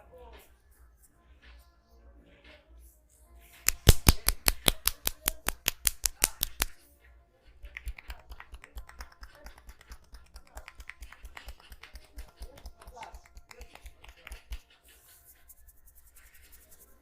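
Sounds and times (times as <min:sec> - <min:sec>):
rhythmic massage hand slaps: 0:03.6 - 0:06.8, 0:07.6 - 0:17.0.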